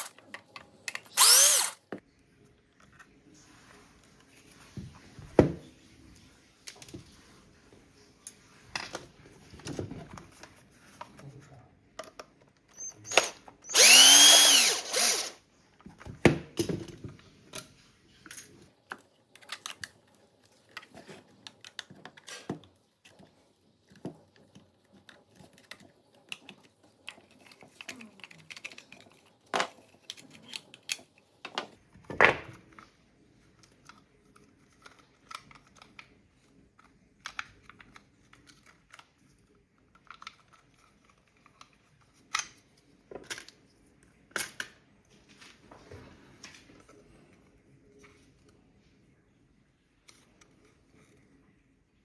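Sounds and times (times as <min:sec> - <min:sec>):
electric drill running: 0:01.1 - 0:01.8, 0:12.8 - 0:15.4.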